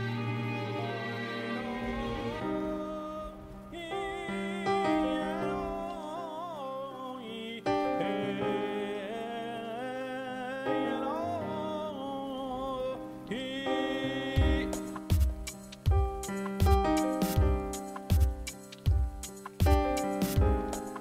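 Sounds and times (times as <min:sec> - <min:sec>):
low thumping beat: 0:14.4 - 0:21.0.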